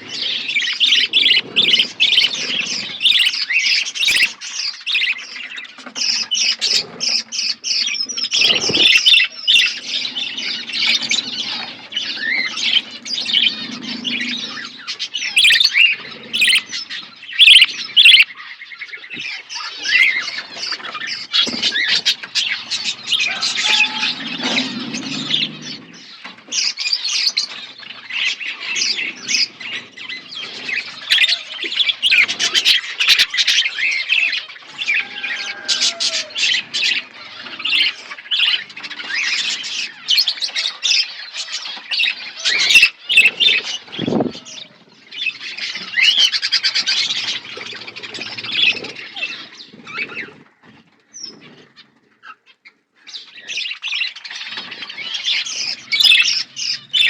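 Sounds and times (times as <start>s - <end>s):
flock of budgerigars chirping: 0.0s - 57.0s.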